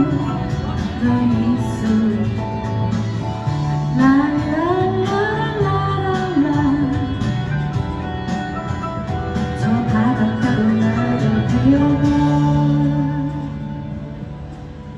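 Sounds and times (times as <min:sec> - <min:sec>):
person singing: 0:00.0 - 0:07.8, 0:09.4 - 0:14.0
acoustic guitar: 0:00.0 - 0:14.9.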